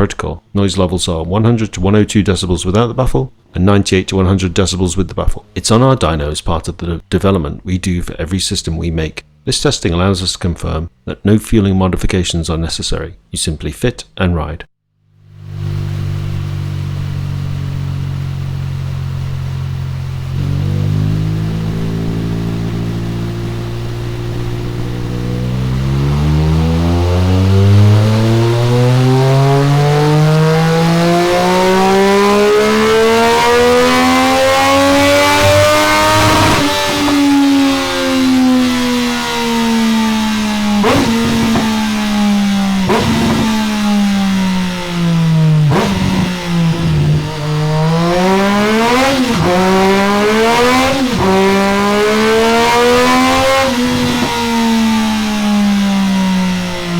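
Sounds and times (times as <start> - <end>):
motorcycle engine revving: 15.0 - 56.9
exhaust cracks on overrun: 15.2 - 32.8, 33.5 - 56.9.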